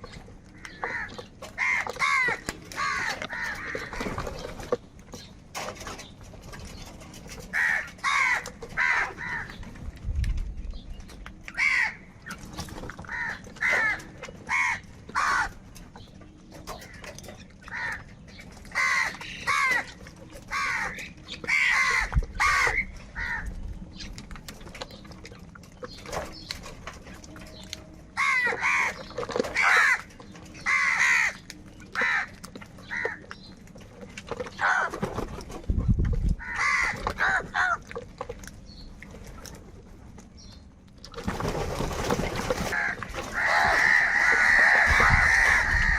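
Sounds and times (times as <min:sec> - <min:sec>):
crows cawing: 0:00.6 - 0:04.2, 0:07.5 - 0:09.6, 0:11.5 - 0:12.1, 0:13.0 - 0:15.6, 0:17.7 - 0:18.1, 0:18.7 - 0:23.5, 0:28.2 - 0:31.4, 0:32.0 - 0:33.3, 0:34.6 - 0:35.0, 0:36.4 - 0:37.8, 0:42.6 - 0:45.9.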